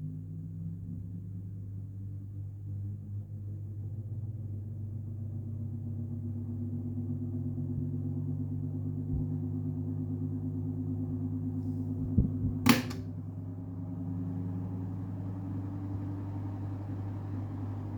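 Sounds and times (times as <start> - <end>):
fan motor whine: 6.3 - 17.9
electric fan hum: 7.6 - 17.9.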